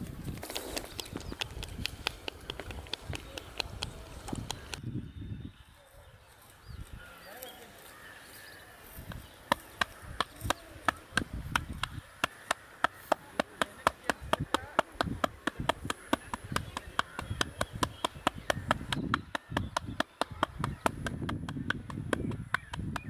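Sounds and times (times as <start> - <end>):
hands slapping head: 0.6 - 4.8, 9.0 - 23.0.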